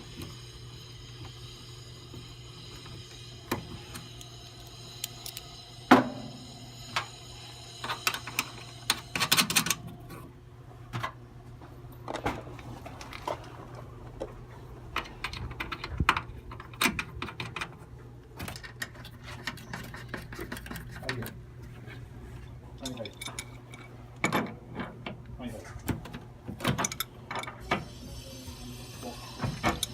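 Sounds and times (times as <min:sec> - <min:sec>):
low steady hum: 0:00.0 - 0:29.9
tools clicking and knocking: 0:03.5 - 0:06.2, 0:18.4 - 0:21.4, 0:26.6 - 0:27.8.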